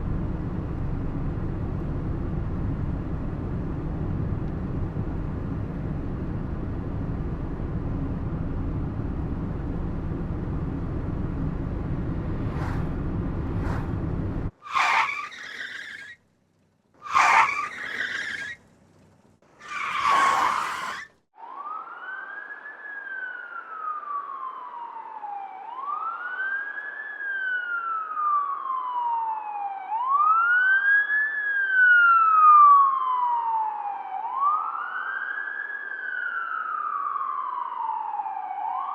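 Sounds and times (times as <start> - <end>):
low vehicle rumble: 0.0 - 15.1, 16.2 - 21.0
short screeching bursts: 14.6 - 16.2, 17.0 - 18.6, 19.6 - 21.1
emergency vehicle siren wailing: 19.7 - 38.9.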